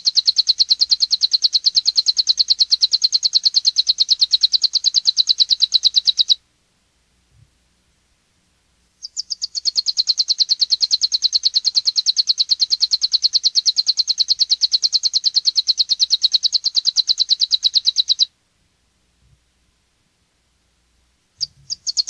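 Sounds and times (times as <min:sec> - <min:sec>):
finch singing rapid trill: 0:21.4 - 0:22.0.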